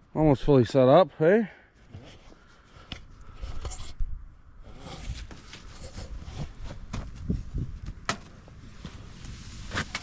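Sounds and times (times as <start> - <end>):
wind on microphone: 4.9 - 10.0.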